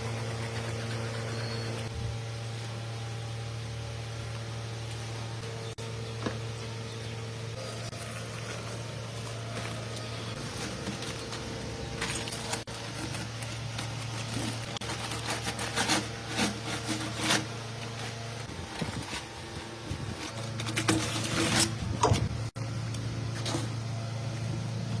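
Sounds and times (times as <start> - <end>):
small motor humming: 0.0 - 14.9.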